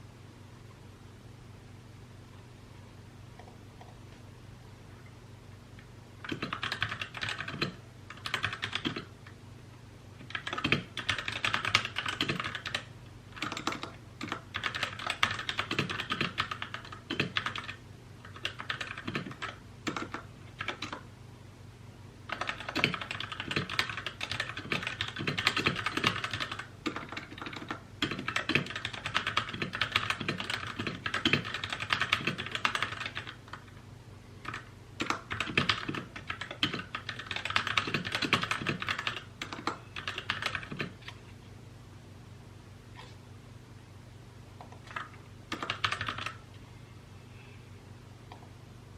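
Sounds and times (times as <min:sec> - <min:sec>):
mechanical keyboard typing: 0:06.2 - 0:09.1, 0:10.2 - 0:21.0, 0:22.3 - 0:33.7, 0:34.4 - 0:41.2, 0:44.6 - 0:46.4.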